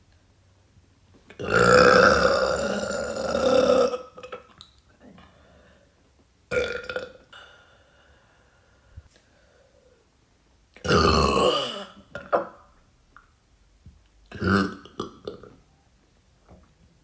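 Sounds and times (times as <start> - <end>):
woman burping: 1.4 - 4.4, 10.8 - 12.7.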